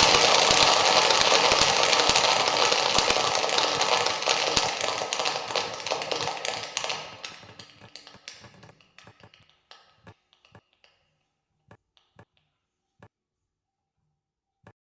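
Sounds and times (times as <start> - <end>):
audience applause: 0.0 - 9.1.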